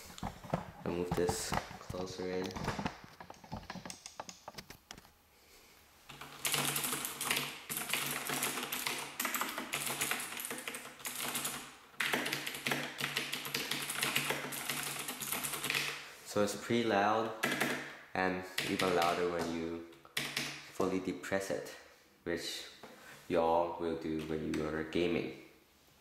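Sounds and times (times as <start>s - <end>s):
mechanical keyboard typing: 1.2s - 4.6s, 6.1s - 16.0s, 17.4s - 17.9s, 18.6s - 20.6s.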